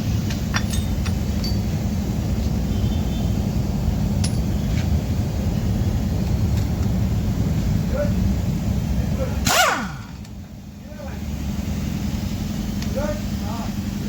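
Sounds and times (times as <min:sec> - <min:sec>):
low mechanical rumble: 0:00.0 - 0:14.0
metallic clinks of tools: 0:00.3 - 0:01.8, 0:04.2 - 0:04.6.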